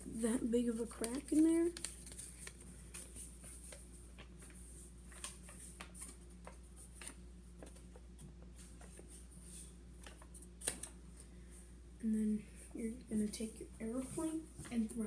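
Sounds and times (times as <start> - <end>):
low steady hum: 0.0 - 15.0
paper being folded: 0.6 - 7.9.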